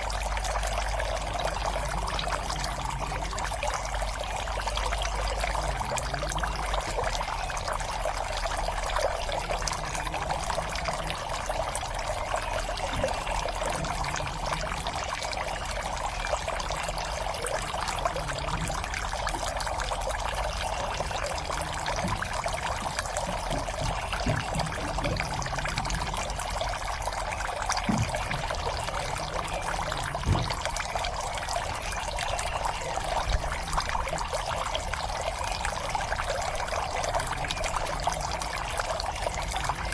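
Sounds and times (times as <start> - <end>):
water pouring into pond: 0.0 - 39.9
faint low knocks: 16.7 - 31.8.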